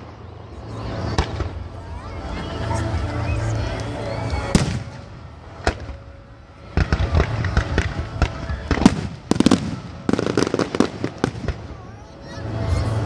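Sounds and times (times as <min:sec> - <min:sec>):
fireworks bursting: 0:00.9 - 0:01.9, 0:03.3 - 0:12.0
fireworks crackling pops: 0:01.0 - 0:01.7, 0:03.5 - 0:11.8.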